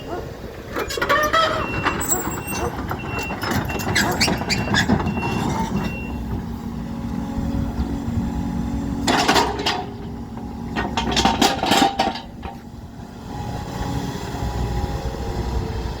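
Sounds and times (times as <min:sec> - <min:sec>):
excavator engine running: 0:00.0 - 0:16.0
loud metallic clanks and scrapes: 0:09.0 - 0:12.6.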